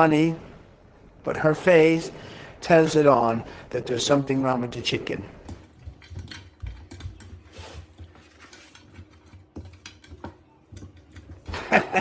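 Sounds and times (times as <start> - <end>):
utensils and dishes clinking: 5.5 - 12.0.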